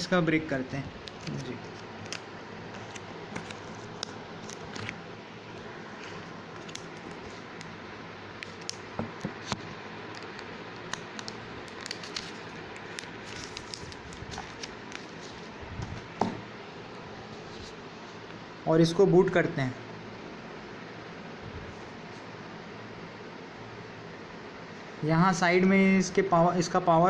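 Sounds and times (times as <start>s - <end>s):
steady low hiss: 0.0s - 27.0s
plastic film crinkling: 1.0s - 5.0s, 5.9s - 7.8s, 8.4s - 16.1s.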